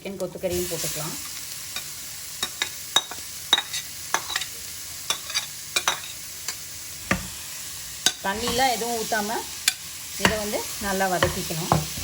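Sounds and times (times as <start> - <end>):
meat sizzling in a pan: 0.0 - 12.0
spatula scraping a pan: 5.1 - 7.4.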